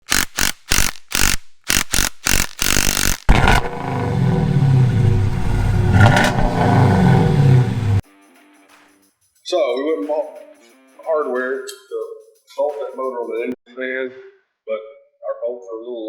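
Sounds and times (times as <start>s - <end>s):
engine revving: 2.6s - 8.0s.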